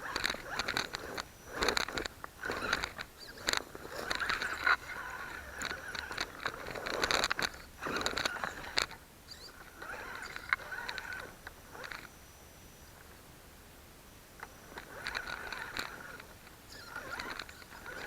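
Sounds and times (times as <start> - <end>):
electric motor and gears whining: 0.0 - 12.9, 14.4 - 18.0.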